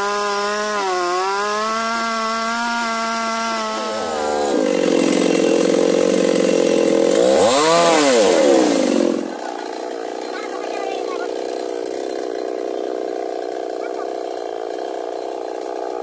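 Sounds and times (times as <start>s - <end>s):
chainsaw cutting wood: 0.0s - 16.0s.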